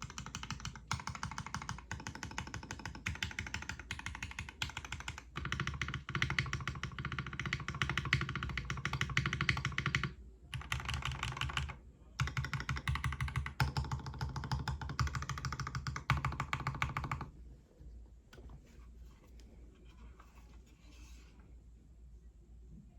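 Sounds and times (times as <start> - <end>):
fast typing on mechanical keyboard: 0.0 - 17.3.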